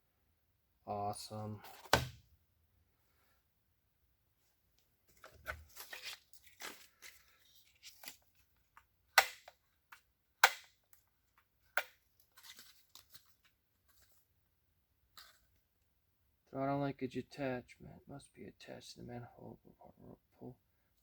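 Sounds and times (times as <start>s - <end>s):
packaging rustling and tearing: 5.2s - 8.5s, 12.2s - 14.2s.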